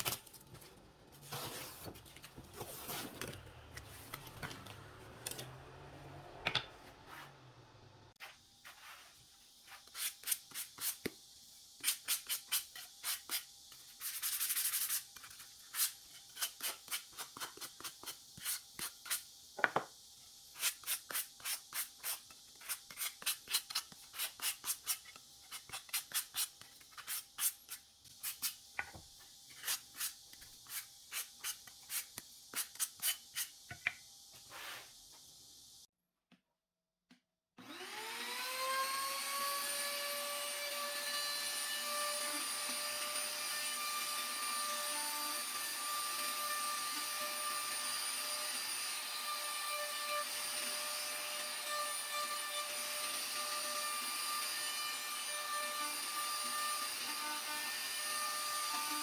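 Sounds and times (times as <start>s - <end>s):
sandpaper rubbing on wood: 11.8s - 19.3s.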